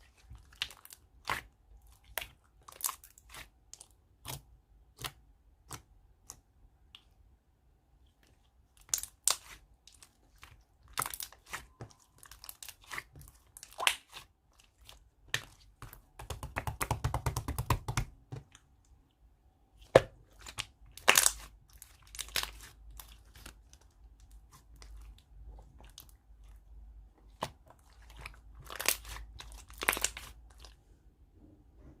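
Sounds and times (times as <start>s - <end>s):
chewing and crunching food: 0.0s - 4.0s, 8.3s - 16.1s, 20.2s - 30.8s.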